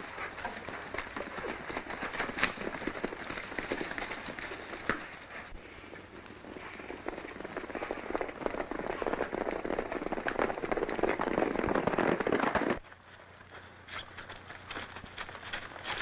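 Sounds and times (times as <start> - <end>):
horses galloping hoofbeats: 0.0 - 16.0.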